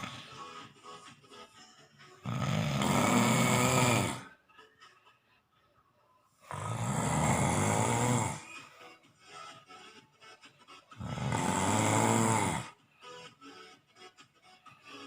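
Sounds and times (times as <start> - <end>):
loud snoring: 0.0 - 0.4, 2.2 - 4.3, 6.5 - 8.6, 11.0 - 12.8.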